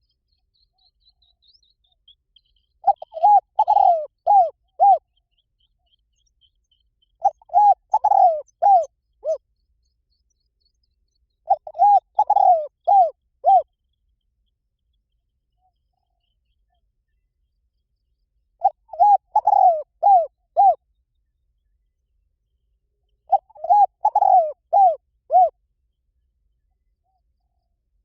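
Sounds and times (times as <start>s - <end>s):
small birds chirping: 0.0s - 28.0s
dove cooing: 2.8s - 5.1s, 7.2s - 9.4s, 11.4s - 13.7s, 18.6s - 20.8s, 23.3s - 25.6s.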